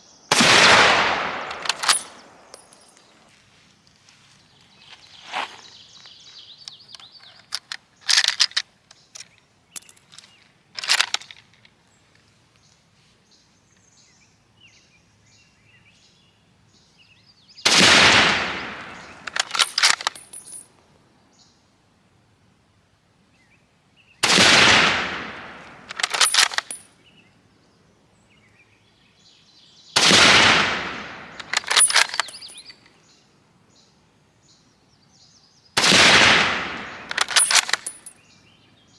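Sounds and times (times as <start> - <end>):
rifle shots: 0.3 - 3.0, 17.7 - 20.6, 24.2 - 26.8, 30.0 - 32.7, 35.8 - 38.1
rifle bolt metal clicks: 1.2 - 3.1, 6.6 - 11.7, 18.6 - 20.6, 25.2 - 26.9, 30.5 - 32.9, 35.8 - 38.2.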